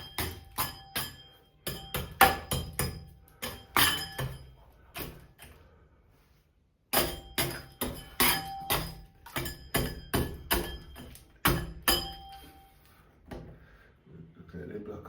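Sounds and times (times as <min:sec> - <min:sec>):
hammer blows with metallic ring: 0:00.0 - 0:05.2, 0:06.9 - 0:12.8.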